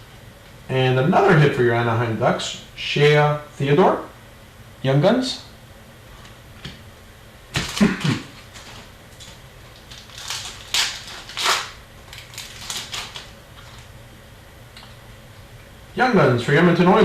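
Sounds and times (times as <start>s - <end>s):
foil wrappers and cards rustling: 7.5s - 14.0s.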